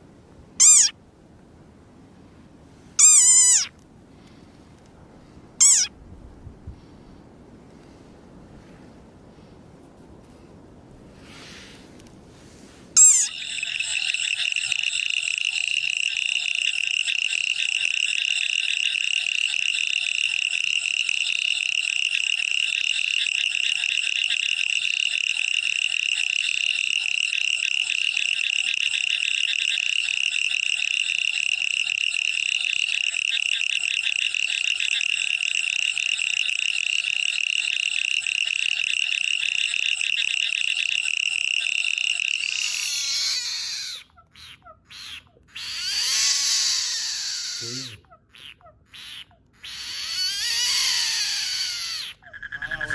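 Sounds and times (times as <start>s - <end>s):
frogs trilling: 0.6s - 0.9s, 3.0s - 3.7s, 5.6s - 5.9s, 13.0s - 52.9s.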